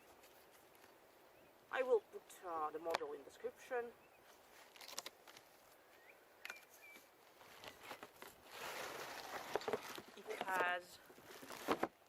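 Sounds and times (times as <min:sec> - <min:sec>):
packaging rustling: 0:04.6 - 0:05.5, 0:07.4 - 0:12.0.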